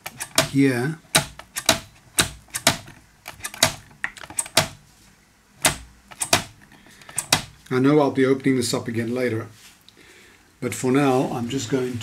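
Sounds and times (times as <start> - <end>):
band selector clicking: 0.0 - 4.8, 5.6 - 7.6.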